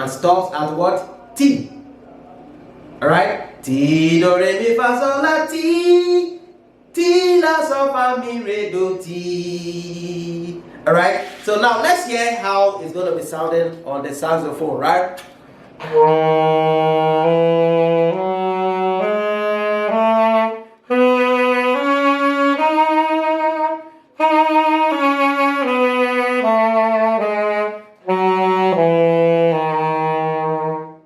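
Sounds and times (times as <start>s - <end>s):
saxophone playing a scale: 3.9s - 12.8s, 15.7s - 31.0s.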